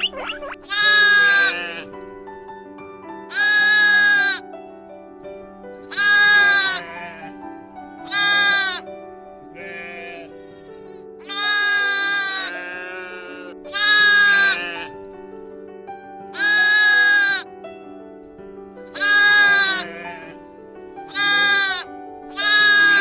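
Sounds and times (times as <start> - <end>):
sheep bleating: 0.0 - 1.9, 3.3 - 4.4, 5.8 - 7.2, 8.0 - 8.8, 9.6 - 10.3, 11.2 - 14.9, 16.4 - 17.5, 18.9 - 20.4, 21.1 - 23.0
soft background music: 0.0 - 23.0.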